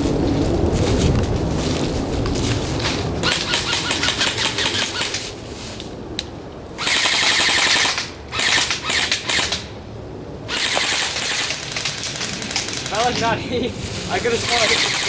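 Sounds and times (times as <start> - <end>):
airsoft gun firing bursts: 6.8 - 9.7, 10.5 - 13.2, 14.4 - 15.0.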